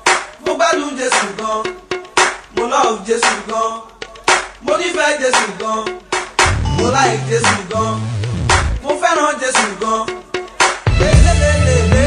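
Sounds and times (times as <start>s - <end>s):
music with a steady beat: 0.0s - 12.0s
vocal-like melodic lines: 0.4s - 12.0s
strong percussive hits: 6.2s - 8.8s.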